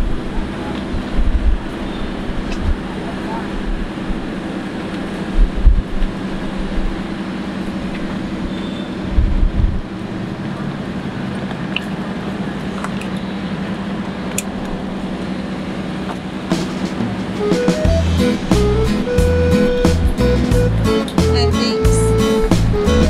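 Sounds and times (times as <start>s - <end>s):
low thumps: 0.0s - 3.0s, 5.3s - 7.1s, 9.1s - 9.9s, 16.5s - 23.0s
vehicle engine droning: 0.0s - 23.0s.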